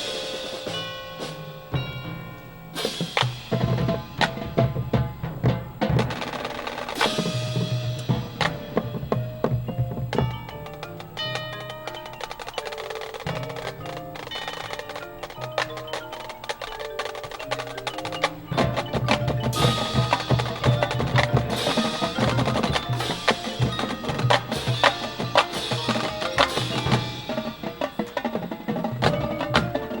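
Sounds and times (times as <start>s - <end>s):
ringing cymbal crashes: 0.0s - 9.2s, 18.4s - 28.8s
heavy drums: 0.0s - 30.0s
mallet percussion pattern: 0.0s - 30.0s.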